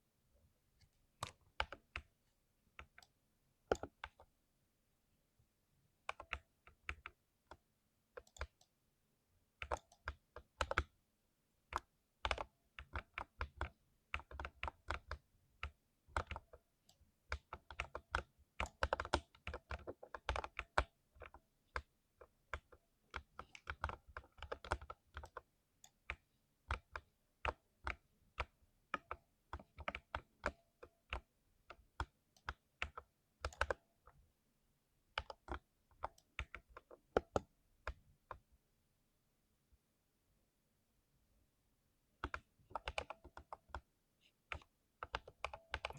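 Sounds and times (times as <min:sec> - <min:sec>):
typing on mechanical keyboard: 0:09.6 - 0:11.0, 0:11.8 - 0:16.6, 0:17.3 - 0:21.9, 0:22.5 - 0:33.8, 0:35.2 - 0:38.0, 0:42.2 - 0:43.9, 0:44.5 - 0:45.9.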